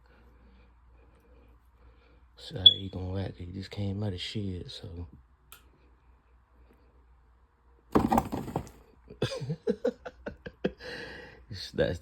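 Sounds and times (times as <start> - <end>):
loud knock and clatter: 8.0 - 8.8.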